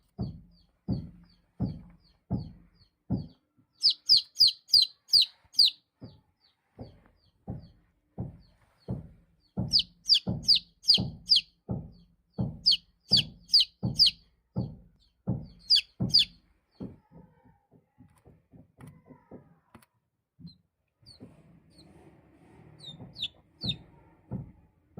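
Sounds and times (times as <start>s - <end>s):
dull low thuds: 0.0s - 4.2s, 6.8s - 17.0s
baby chicks peeping: 0.0s - 17.2s, 22.6s - 24.6s.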